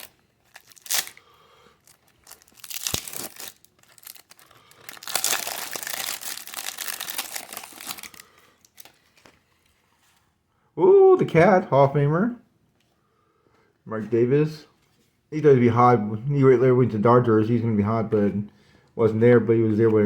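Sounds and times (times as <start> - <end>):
wrapper tearing and crinkling: 0.0 - 9.2.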